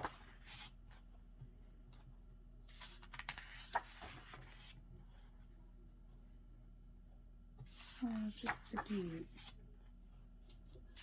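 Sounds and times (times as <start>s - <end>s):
paper pages rustling: 7.7s - 9.6s.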